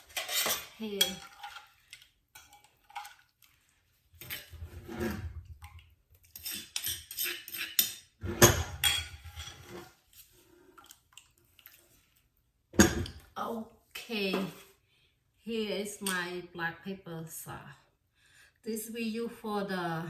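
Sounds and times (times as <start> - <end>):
metal spoon scraping a bowl: 0.0 - 3.6, 4.2 - 5.5, 6.2 - 11.0.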